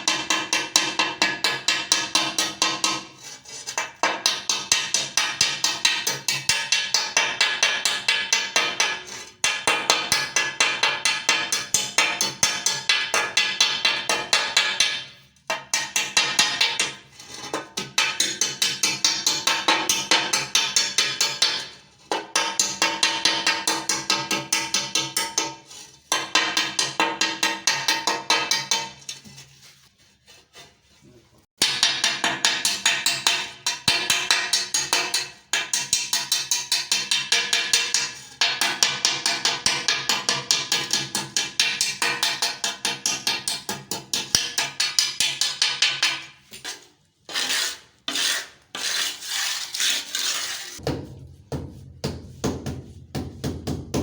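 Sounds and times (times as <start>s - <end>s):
ceramic tile being filed: 47.3s - 50.8s.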